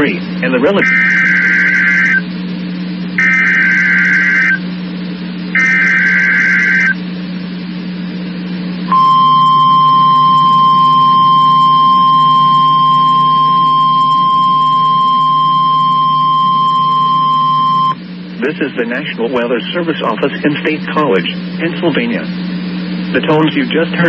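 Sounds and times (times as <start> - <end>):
screechy alternating data tones: 0.8 - 2.2, 3.2 - 4.6, 5.6 - 7.0, 8.9 - 18.0
steady warning alarm tone: 0.8 - 2.2, 3.2 - 4.6, 5.6 - 7.0, 8.9 - 18.0.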